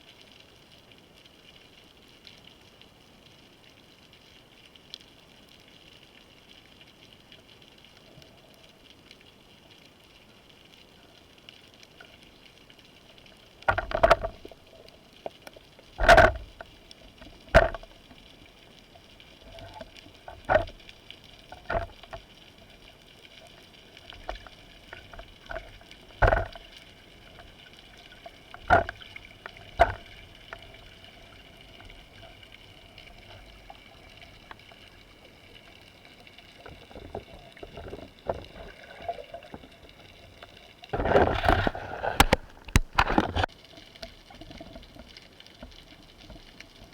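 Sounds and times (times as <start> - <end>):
faint underwater background: 0.0 - 46.9
sharp underwater knocks and clicks: 13.6 - 18.2, 19.4 - 22.7, 24.0 - 35.2, 36.6 - 46.9.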